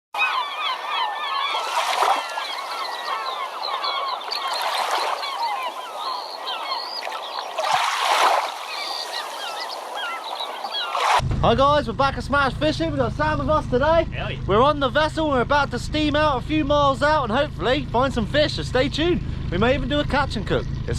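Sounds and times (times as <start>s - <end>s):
flock of birds chirping: 0.2s - 11.2s
rushes of splashing noise: 1.5s - 11.2s.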